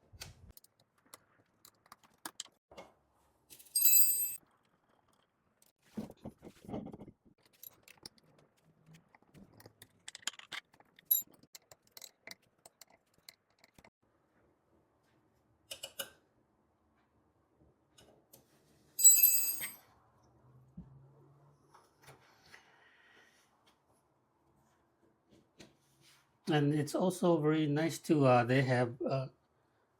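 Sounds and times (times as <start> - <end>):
metal parts clicking and knocking: 9.1 - 13.9
short metallic rings: 19.0 - 19.8.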